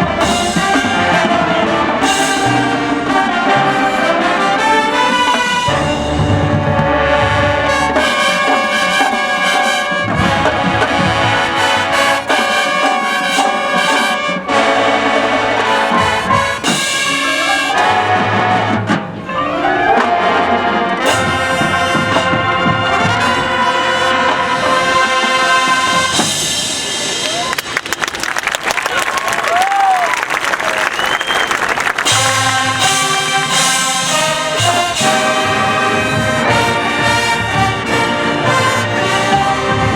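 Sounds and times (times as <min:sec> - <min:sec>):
drum hits: 0:00.0 - 0:14.6, 0:20.0 - 0:27.5, 0:32.0 - 0:39.9
brass chords: 0:00.0 - 0:27.2, 0:31.8 - 0:39.9.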